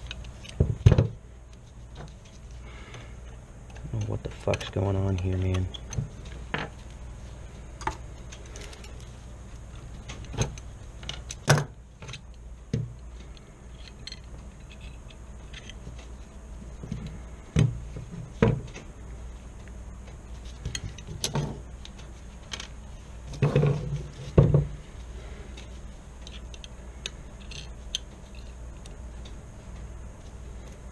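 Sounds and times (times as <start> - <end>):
steel gun parts clicking and knocking: 3.7 - 6.7, 13.7 - 15.8, 26.2 - 28.9.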